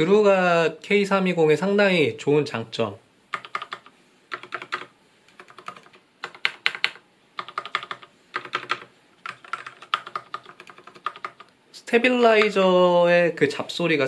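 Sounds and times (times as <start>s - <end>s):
mechanical keyboard typing: 3.3s - 11.5s.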